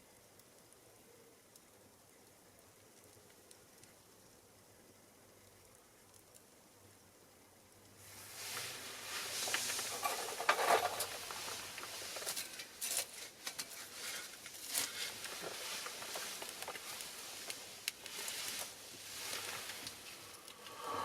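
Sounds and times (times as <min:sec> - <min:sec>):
fire crackling and popping: 0:01.5 - 0:06.7, 0:07.7 - 0:21.0
flame hissing: 0:08.0 - 0:21.0.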